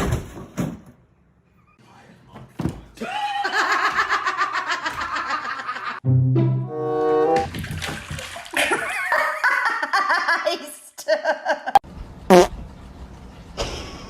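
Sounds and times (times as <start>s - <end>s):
sustained musical notes: 6.0s - 7.4s
person laughing: 8.6s - 11.8s.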